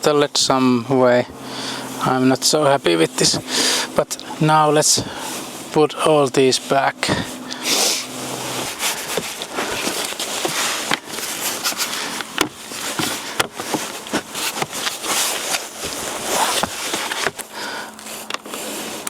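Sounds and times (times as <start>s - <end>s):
plastic trim clicking and scraping: 8.7s - 17.5s.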